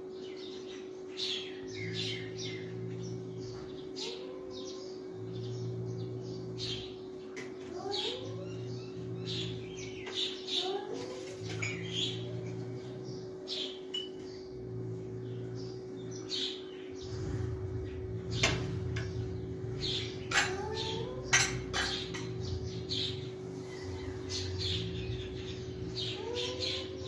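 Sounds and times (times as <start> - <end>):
steady low hum: 0.0 - 27.0
cat trilling: 4.0 - 4.9, 7.7 - 9.6, 25.9 - 27.0
cat chirping: 7.8 - 9.6, 26.1 - 27.0.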